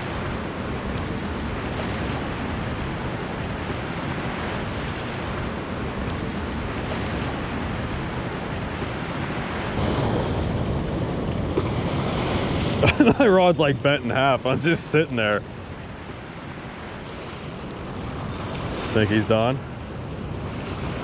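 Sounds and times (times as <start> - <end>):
river water flowing: 0.0 - 21.0
wind buffeting microphone: 0.0 - 21.0.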